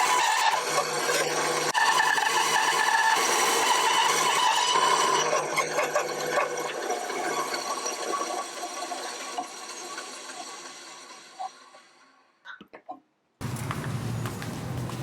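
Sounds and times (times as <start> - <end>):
power tool shaping wood: 0.0 - 11.9.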